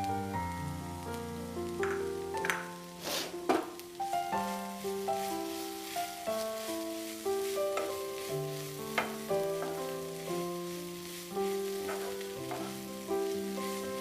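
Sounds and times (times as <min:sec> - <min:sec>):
cabbage sizzling in a pan: 0:00.0 - 0:14.0
stirring scrapes: 0:04.5 - 0:14.0.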